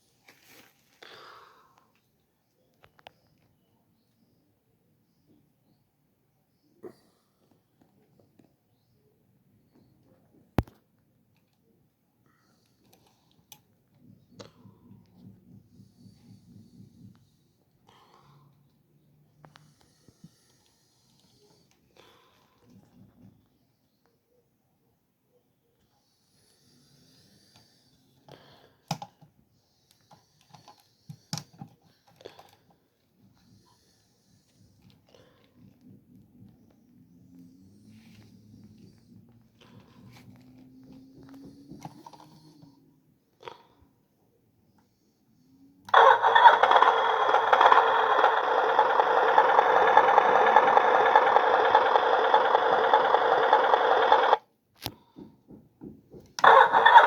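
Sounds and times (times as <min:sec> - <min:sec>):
motorcycle engine through small speaker: 0:45.9 - 0:54.4, 0:56.4 - 0:57.0.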